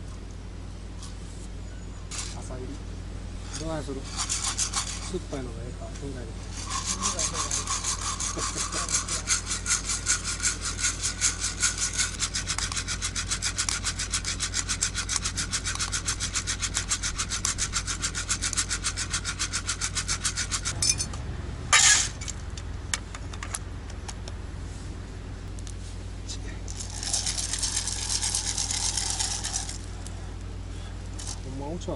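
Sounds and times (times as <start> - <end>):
hand coffee mill grinding: 3.4 - 5.3, 6.5 - 20.8, 26.7 - 30.1, 31.2 - 31.6.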